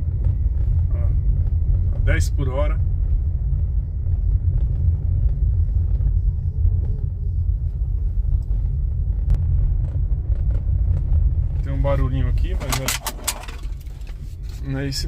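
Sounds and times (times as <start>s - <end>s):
car rolling slowly rumble: 0.0s - 15.0s.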